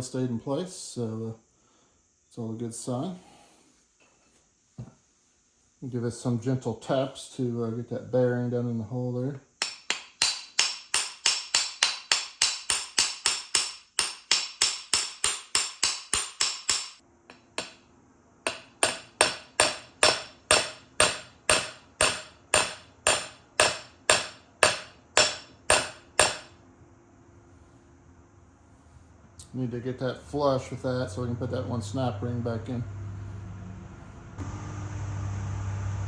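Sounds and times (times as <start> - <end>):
hammer tapping a bearing: 9.6 - 17.8, 18.5 - 26.5.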